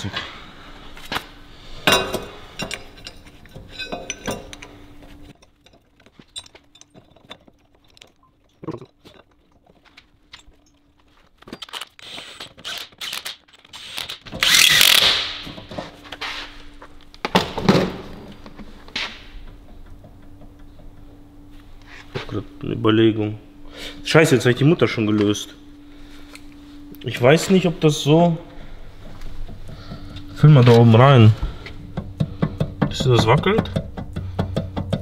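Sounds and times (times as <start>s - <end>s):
metal tools clanking: 1.8s - 12.6s.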